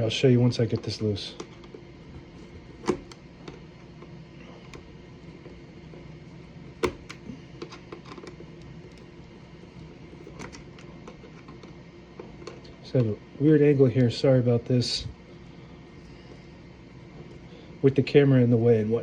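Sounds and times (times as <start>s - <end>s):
typewriter clicks and knocks: 6.8s - 7.2s.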